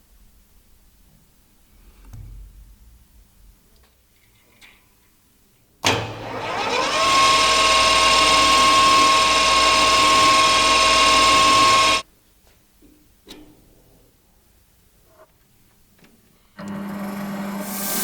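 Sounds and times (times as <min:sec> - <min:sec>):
power tool motor whining: 0:06.1 - 0:12.0.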